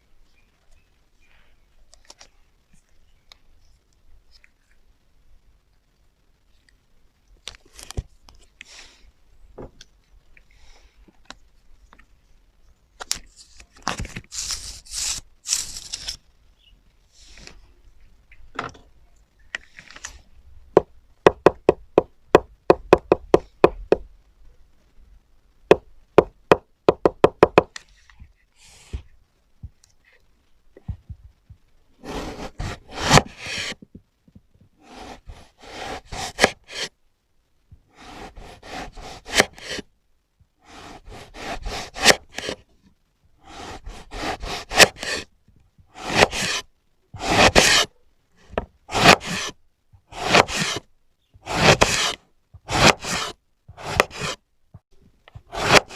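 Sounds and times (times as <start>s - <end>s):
knife slicing and scraping: 32.0s - 33.8s, 34.9s - 36.9s, 38.0s - 39.8s, 40.6s - 42.6s, 43.4s - 45.3s, 46.0s - 46.6s, 47.2s - 47.9s, 48.9s - 50.8s, 51.4s - 54.4s, 55.5s - 55.9s
knife chopping: 32.1s - 33.7s, 46.0s - 46.6s, 47.2s - 47.9s, 48.9s - 49.5s, 50.2s - 50.8s, 51.5s - 54.4s, 55.5s - 55.9s.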